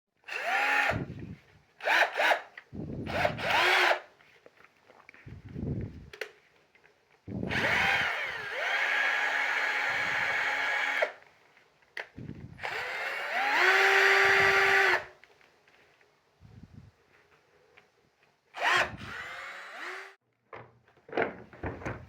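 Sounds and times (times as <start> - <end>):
cordless drill whine: 0.3 - 4.1, 7.4 - 11.2, 12.2 - 15.2, 18.6 - 20.2.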